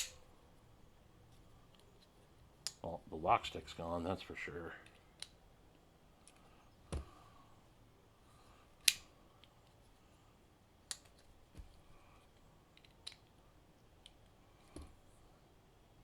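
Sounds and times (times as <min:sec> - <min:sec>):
folding knife blade clicking: 0:00.0 - 0:00.2, 0:08.8 - 0:09.1.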